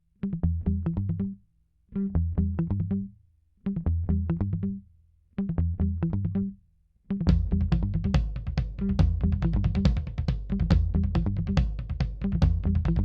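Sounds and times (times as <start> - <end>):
bass line: 0.3 - 1.4, 2.0 - 3.2, 7.2 - 13.0.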